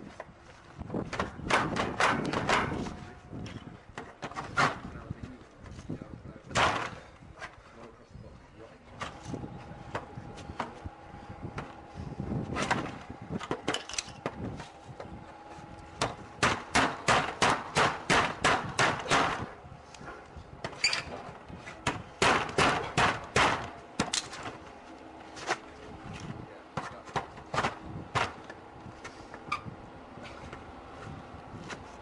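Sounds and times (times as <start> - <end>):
garage door being struck: 1.1 - 2.8, 6.5 - 7.0, 16.0 - 19.6, 20.6 - 24.6.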